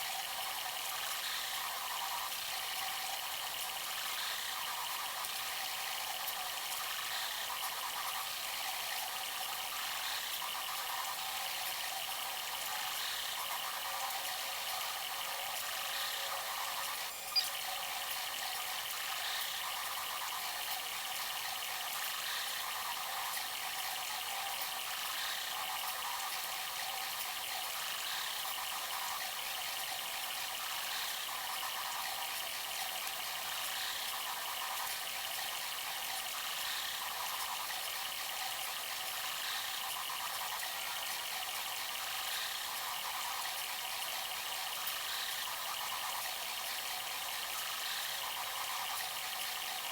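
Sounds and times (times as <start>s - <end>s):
printer motors and fans whirring: 12.9s - 20.4s.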